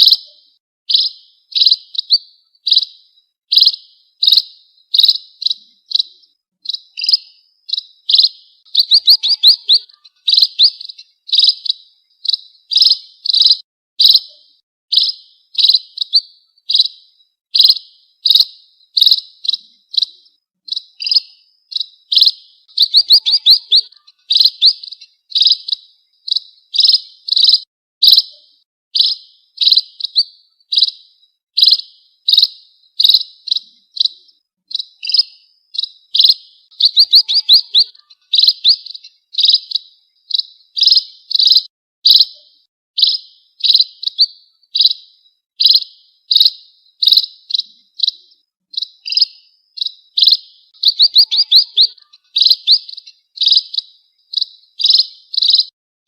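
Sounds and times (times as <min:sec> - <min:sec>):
bird chirps: 0:00.0 - 0:55.8.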